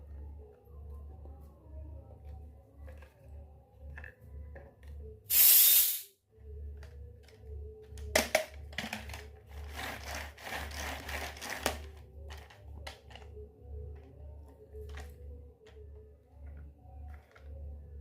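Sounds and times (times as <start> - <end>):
soft background music: 0.0 - 18.0
loud hiss: 5.3 - 6.1
small objects rustling: 9.5 - 13.3.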